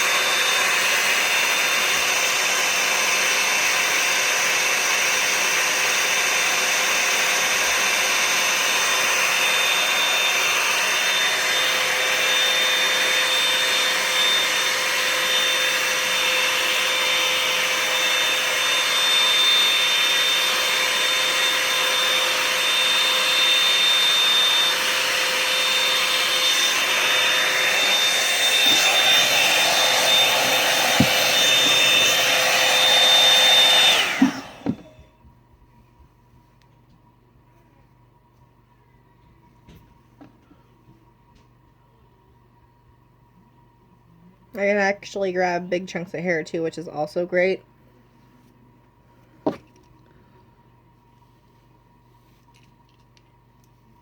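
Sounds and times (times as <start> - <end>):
hot-air brush blowing air: 0.0 - 35.0.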